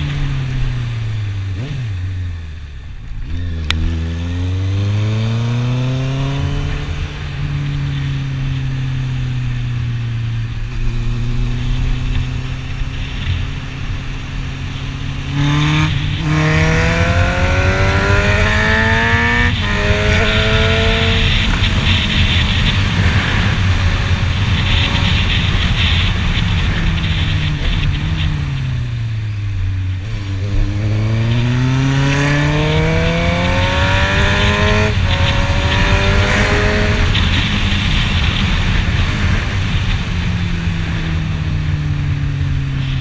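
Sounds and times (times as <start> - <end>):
motorcycle engine: 0.0 - 43.0.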